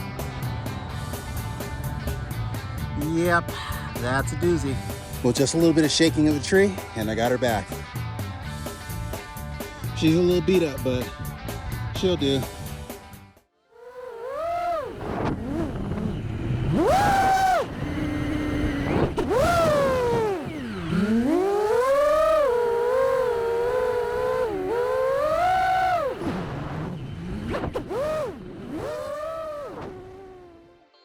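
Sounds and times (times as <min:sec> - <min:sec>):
drone motors and propellers whining: 0:13.8 - 0:30.8.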